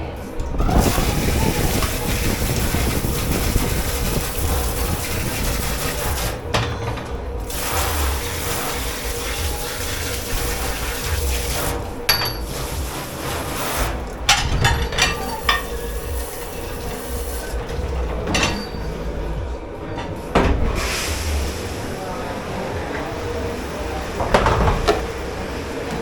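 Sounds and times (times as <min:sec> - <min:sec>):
constant hum: 0:00.0 - 0:26.0
dishes and pans clattering: 0:01.1 - 0:07.6, 0:12.0 - 0:19.2, 0:24.2 - 0:25.2.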